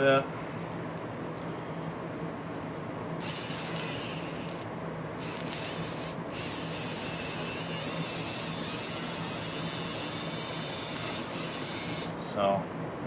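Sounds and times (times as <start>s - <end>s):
small electric motor whining: 3.2s - 12.2s.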